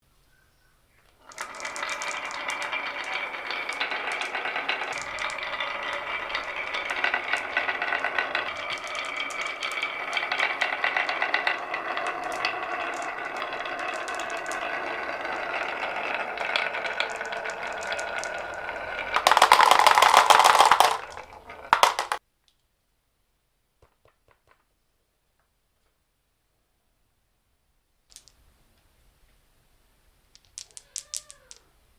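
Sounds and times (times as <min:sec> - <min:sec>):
marbles clattering down tracks: 0:01.2 - 0:22.2, 0:30.4 - 0:31.7.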